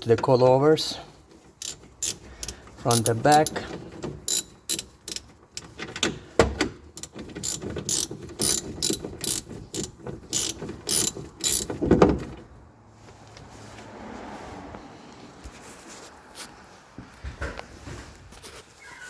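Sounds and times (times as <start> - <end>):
socket ratchet clicking: 1.6 - 5.8, 6.9 - 11.8.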